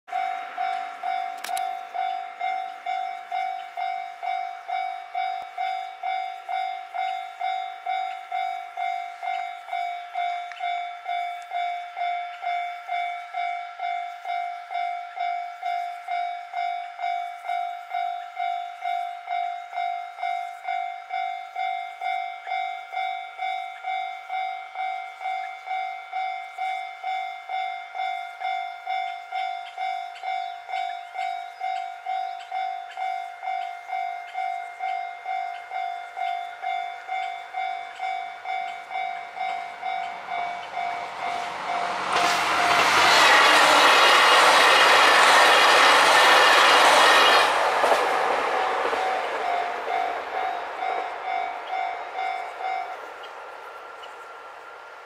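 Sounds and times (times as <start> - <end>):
level-crossing bell dinging: 0.1 - 47.5, 48.6 - 54.9.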